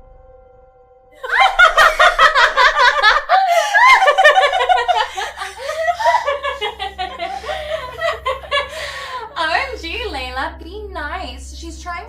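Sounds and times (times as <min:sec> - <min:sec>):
women laughing: 0:01.2 - 0:09.7.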